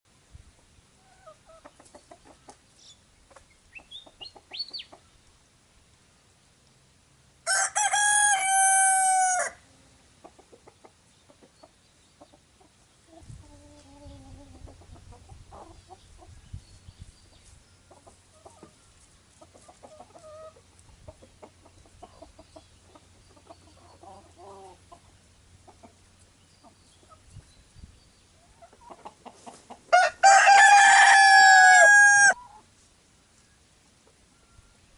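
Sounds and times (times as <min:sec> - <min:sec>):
hens clucking: 0:01.0 - 0:02.7, 0:03.3 - 0:05.2, 0:08.0 - 0:16.4, 0:17.3 - 0:27.4, 0:28.4 - 0:32.7
rooster crowing: 0:07.5 - 0:09.6, 0:29.9 - 0:32.4.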